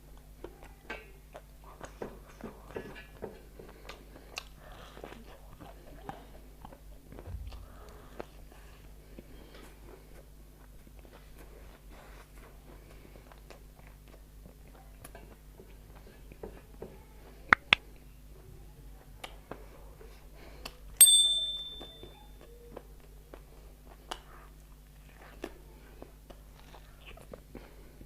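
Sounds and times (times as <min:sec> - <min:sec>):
soft chewing: 0:00.1 - 0:18.1, 0:22.4 - 0:28.0
bright metallic ping: 0:21.0 - 0:22.2.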